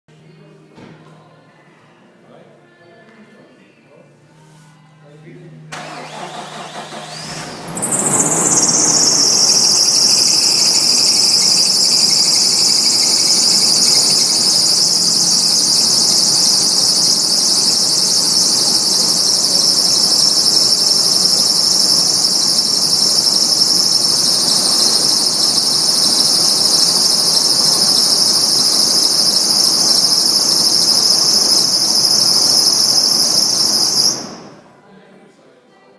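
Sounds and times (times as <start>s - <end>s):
car engine running: 5.8s - 34.6s
high-pitched belt squeal: 5.8s - 34.7s.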